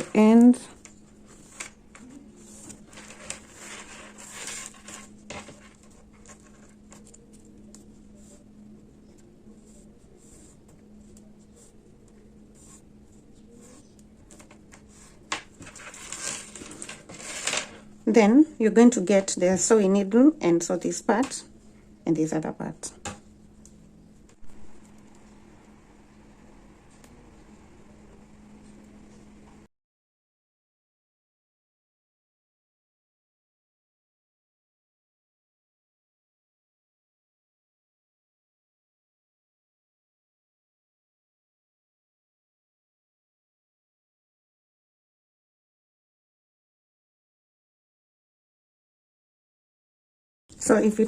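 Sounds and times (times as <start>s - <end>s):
faint steady hum: 0.0s - 29.7s
scratchy drawing strokes on fabric: 2.3s - 16.3s.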